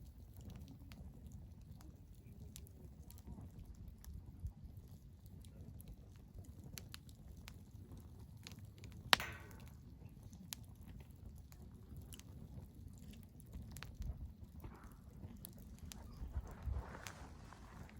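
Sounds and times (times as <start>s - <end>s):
wood fire crackling: 0.0s - 17.9s
loud sharp pop: 9.2s - 9.7s.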